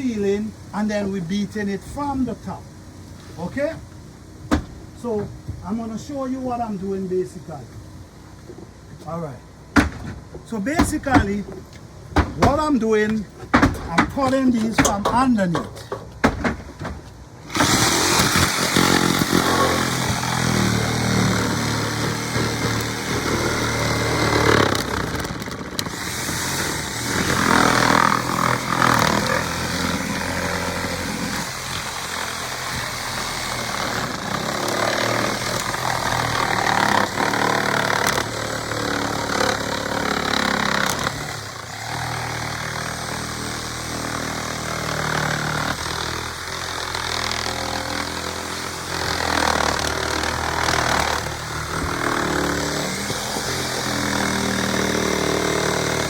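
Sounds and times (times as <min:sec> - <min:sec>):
power saw cutting: 0:17.4 - 0:56.0.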